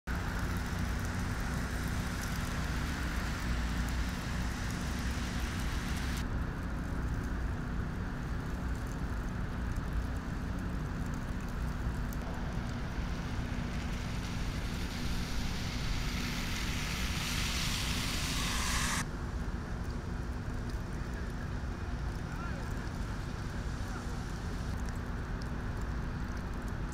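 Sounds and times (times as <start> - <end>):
low traffic rumble: 0.1 - 26.9
passing cars: 12.2 - 19.0.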